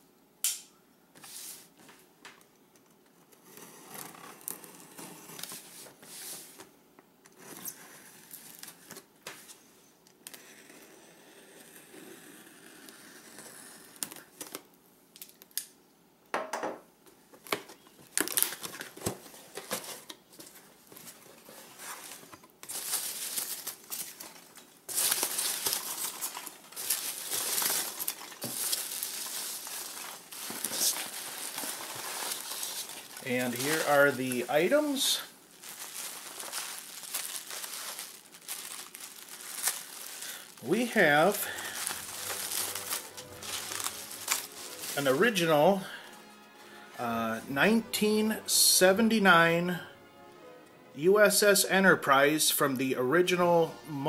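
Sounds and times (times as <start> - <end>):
packing material crinkling and tearing: 17.4 - 45.3.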